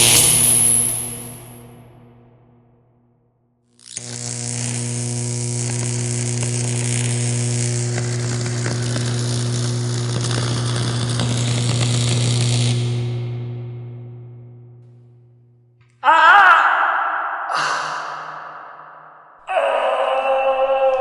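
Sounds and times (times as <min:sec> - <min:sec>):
electrical buzz with crackling sparks: 0:00.0 - 0:01.6, 0:03.7 - 0:15.4.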